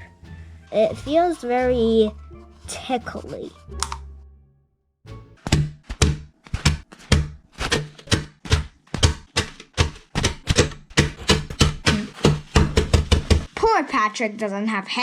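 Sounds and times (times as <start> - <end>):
rapid regular tapping: 5.5 - 13.6.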